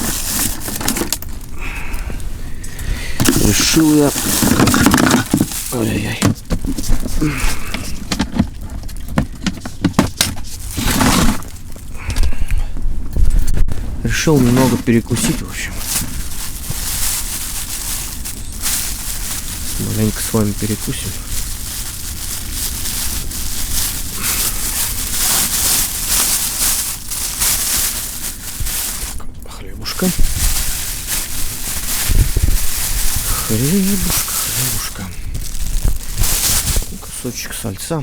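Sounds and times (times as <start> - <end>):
objects clicking and knocking: 0.0 - 1.5, 3.2 - 12.3
strong wind rumble: 11.9 - 14.5, 30.2 - 37.1
strong gusty wind: 32.0 - 33.5.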